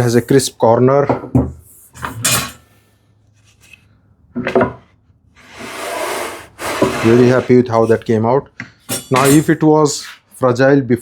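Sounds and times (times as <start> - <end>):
knocks of wooden workpieces: 4.4 - 4.9
wood scraping on wood: 5.4 - 8.1.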